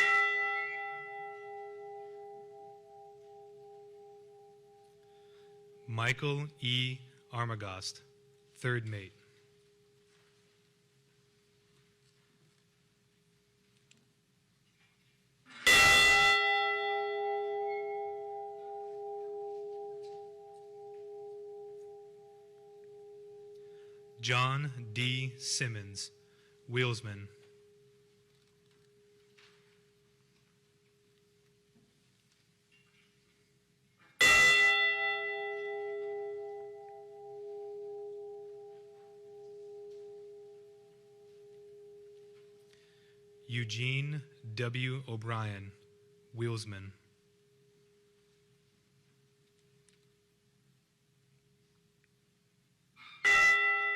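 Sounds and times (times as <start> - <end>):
bell struck and ringing: 0.0 - 4.8, 15.6 - 24.8, 34.2 - 42.2, 53.2 - 53.9.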